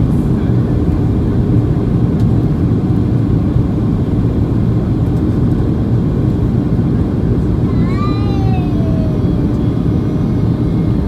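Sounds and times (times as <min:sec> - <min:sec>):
airplane cabin engine rumble: 0:00.0 - 0:11.0.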